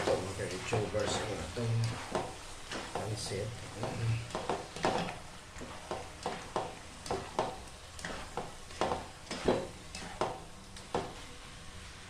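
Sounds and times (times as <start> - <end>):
low sizzle: 0.0 - 12.0
utensil scraping a pot: 8.0 - 10.3.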